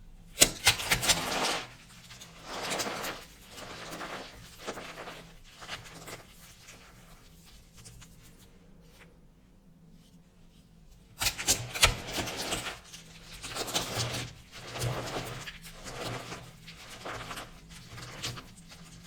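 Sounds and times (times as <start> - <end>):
soap crunching and crackling: 11.2 - 19.0.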